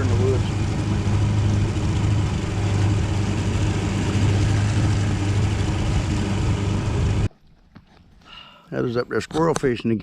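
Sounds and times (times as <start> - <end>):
outboard motor running: 0.0 - 7.3.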